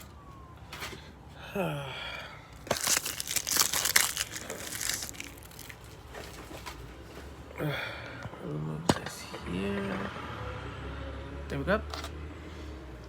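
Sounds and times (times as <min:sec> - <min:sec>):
plastic packaging crinkling: 0:02.6 - 0:06.8.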